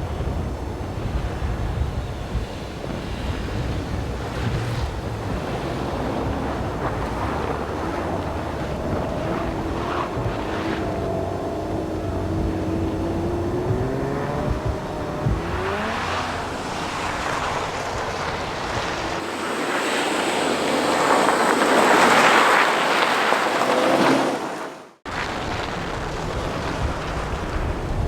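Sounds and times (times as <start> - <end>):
rally car engine revving: 0.0 - 19.4
car passing rush: 0.0 - 27.8
windy background: 0.0 - 28.0.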